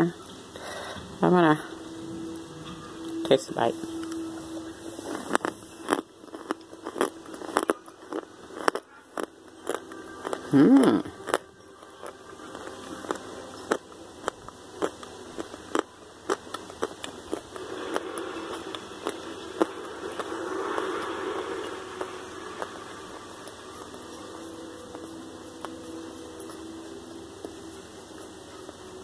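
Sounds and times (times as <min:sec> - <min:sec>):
crunching and chewing: 0:04.9 - 0:28.8
short humming voice: 0:10.5 - 0:11.2.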